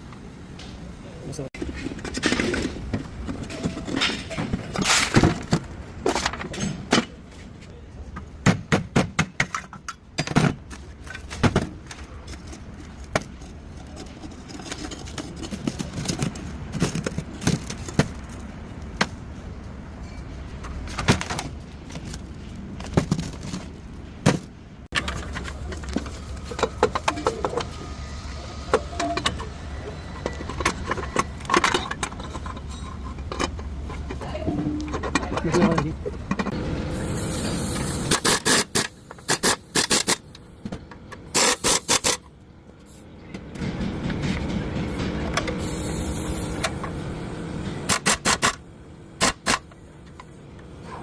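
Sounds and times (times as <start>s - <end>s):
vehicle engine humming: 10.9s - 35.0s.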